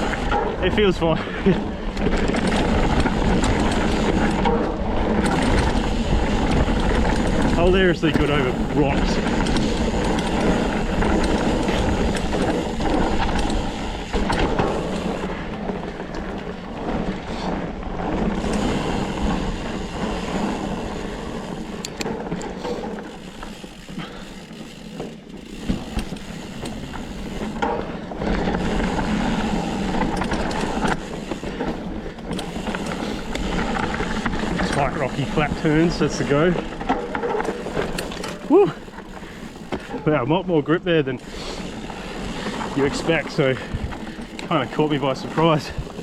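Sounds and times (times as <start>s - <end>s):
bike tyres crunching on rock: 0.0s - 46.0s
bike frame clattering: 18.3s - 40.4s.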